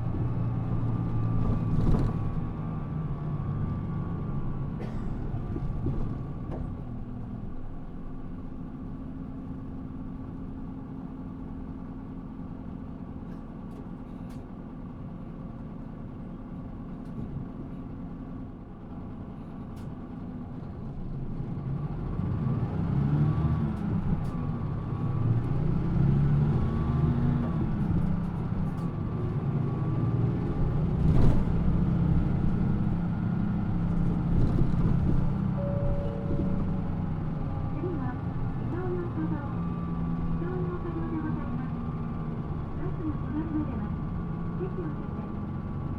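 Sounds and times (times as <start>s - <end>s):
bus engine from inside: 0.0s - 45.9s.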